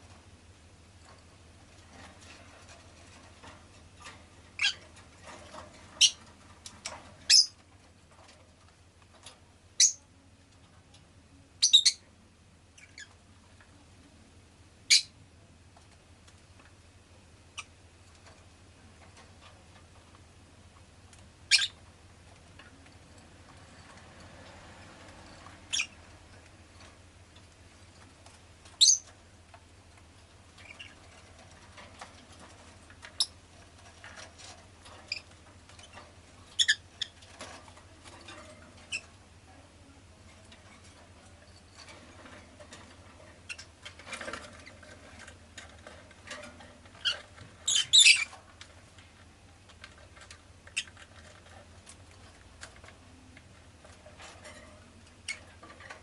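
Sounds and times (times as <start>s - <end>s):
lovebird chirping: 11.6s - 12.0s, 21.5s - 21.8s, 25.7s - 26.0s, 28.8s - 29.1s, 47.6s - 48.3s.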